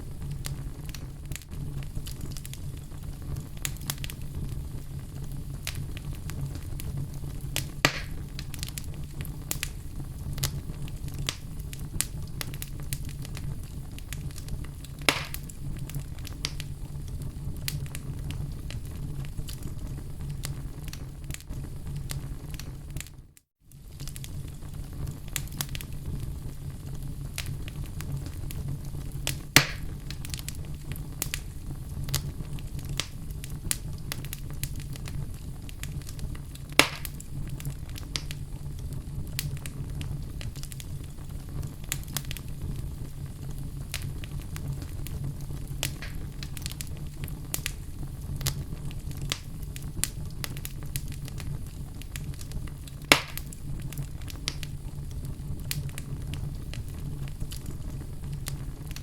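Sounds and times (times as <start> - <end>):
fire crackling: 0.0 - 59.0
low rumble of fire: 0.0 - 59.0
loud pops: 7.6 - 8.3, 15.0 - 15.5, 29.6 - 29.9, 36.7 - 37.2, 45.9 - 46.4, 53.1 - 53.5.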